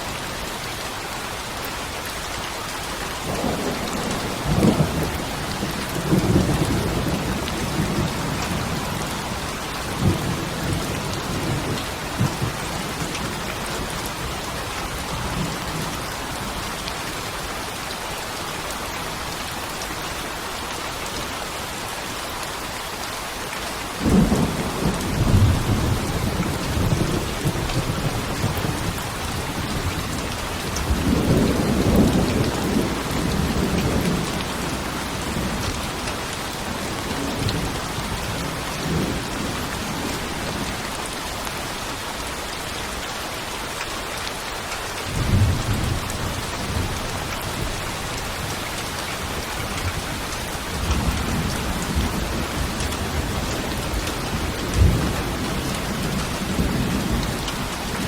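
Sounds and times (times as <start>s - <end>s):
steady rain: 0.0s - 58.0s
low rolls of thunder: 3.3s - 13.4s, 24.0s - 35.7s, 49.2s - 58.0s.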